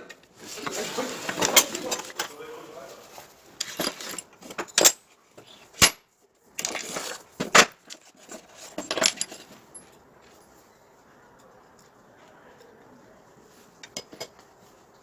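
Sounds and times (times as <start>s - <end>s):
metal parts and tools clinking: 0.0s - 2.3s, 3.6s - 10.7s
rustling: 0.3s - 5.8s.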